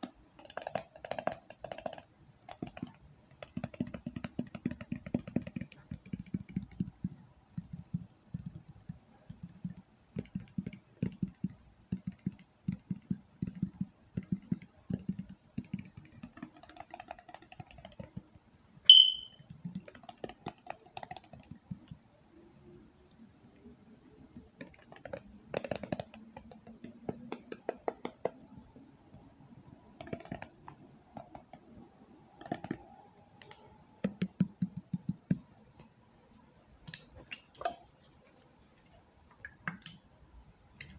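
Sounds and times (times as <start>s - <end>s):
fingers tapping on objects: 0.0s - 18.3s, 18.9s - 22.0s, 24.4s - 28.6s, 30.0s - 31.7s, 32.3s - 35.5s
sharp ringing clink: 18.9s - 19.4s.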